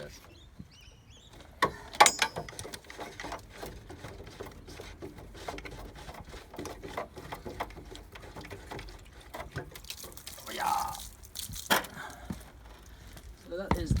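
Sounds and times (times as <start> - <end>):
tools clicking and knocking: 1.4 - 9.8.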